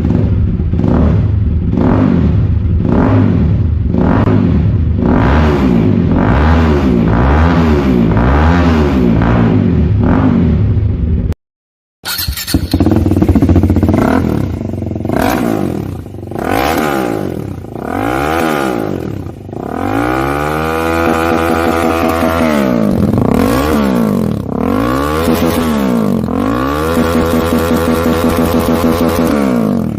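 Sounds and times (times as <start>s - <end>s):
motorcycle engine revving: 0.0s - 11.3s, 12.0s - 29.9s.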